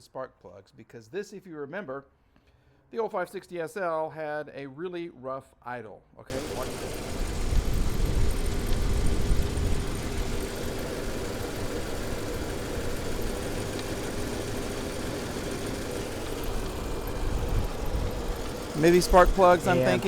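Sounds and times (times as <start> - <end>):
car engine rough idle: 6.3 - 20.0.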